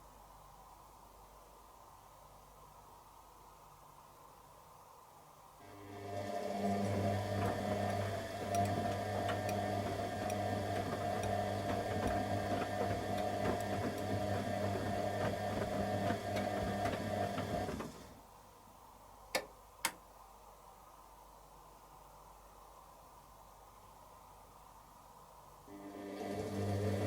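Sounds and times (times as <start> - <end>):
washing machine motor humming: 5.6 - 18.2, 25.7 - 27.0.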